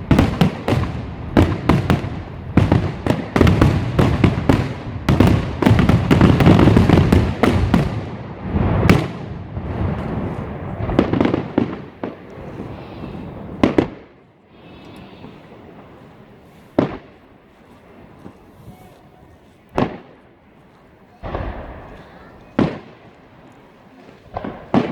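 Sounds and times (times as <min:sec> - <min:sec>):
fireworks bangs: 0:00.0 - 0:24.9
fireworks crackling: 0:00.0 - 0:24.9.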